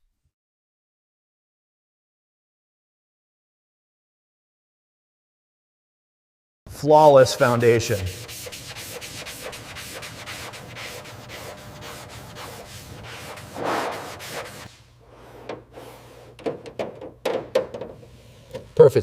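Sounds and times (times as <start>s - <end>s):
hand sanding car panel: 7.4s - 18.4s.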